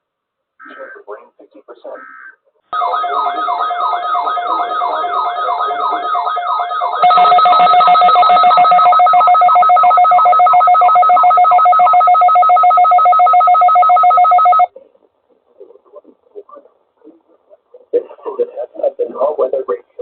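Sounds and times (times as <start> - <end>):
pulsing two-pitch electronic alarm: 2.8 - 14.7.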